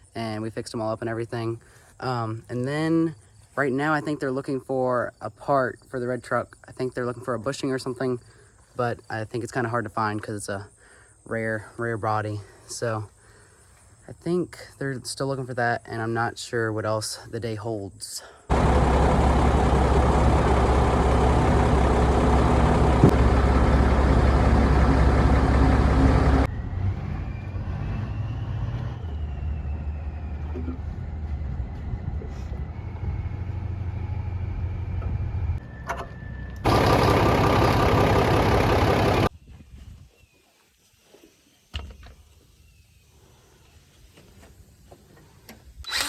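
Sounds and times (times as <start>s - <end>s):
dump truck engine running: 18.5s - 26.8s, 29.0s - 39.3s.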